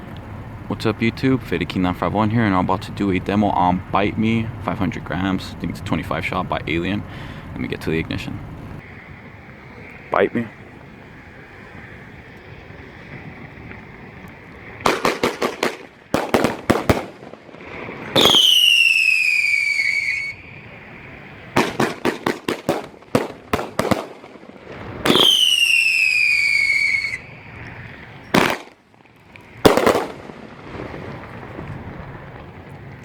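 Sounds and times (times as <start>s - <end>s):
falling firework whistles: 14.4s - 28.8s, 29.6s - 32.1s
firework sharp cracks: 14.7s - 32.6s.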